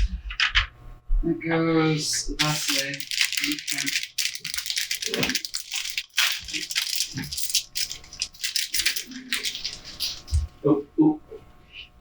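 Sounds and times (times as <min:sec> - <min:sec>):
computer parts rattling and clicking: 0:02.4 - 0:10.5.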